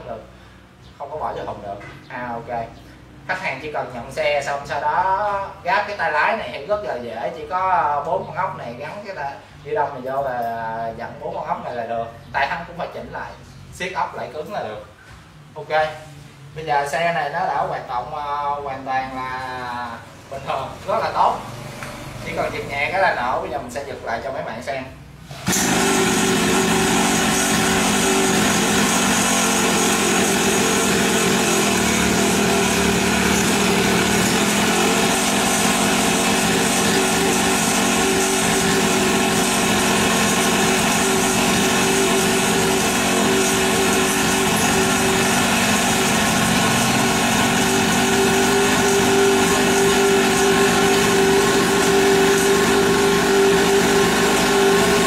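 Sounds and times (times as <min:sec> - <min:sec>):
two-stroke dirt bike engine running: 0:25.4 - 0:55.0.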